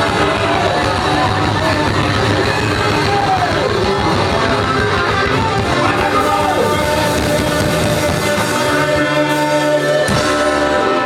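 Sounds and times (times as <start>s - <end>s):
live rock band playing: 0.0s - 11.0s
person singing: 0.0s - 11.0s.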